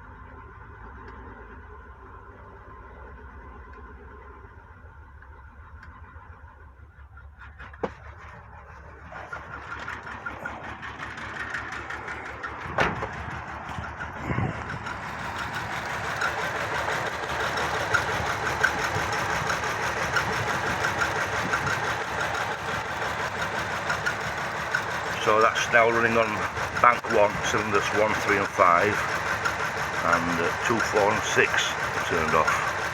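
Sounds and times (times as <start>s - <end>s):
car engine running unevenly: 0.0s - 32.9s
sharp engine knocks: 7.4s - 22.0s.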